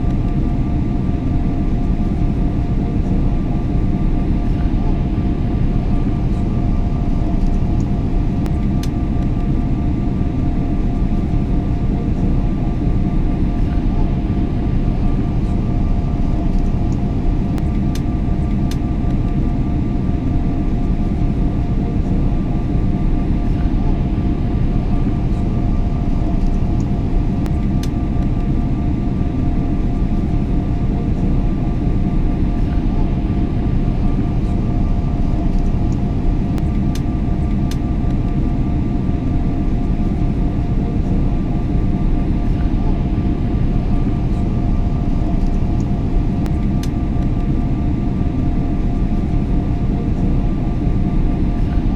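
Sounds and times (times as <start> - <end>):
airplane cabin rumble: 0.0 - 51.9.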